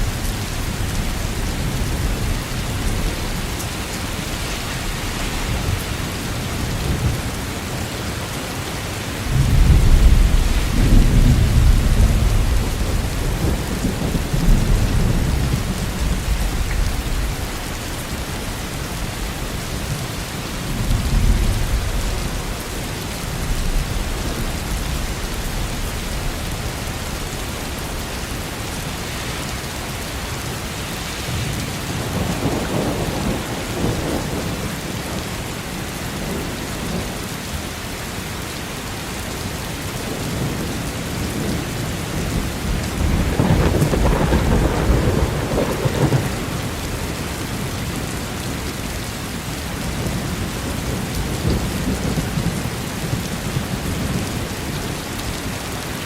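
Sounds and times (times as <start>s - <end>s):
heavy rain: 0.0s - 56.0s
thunder rumbling: 9.3s - 28.4s, 31.4s - 37.1s, 40.1s - 48.5s.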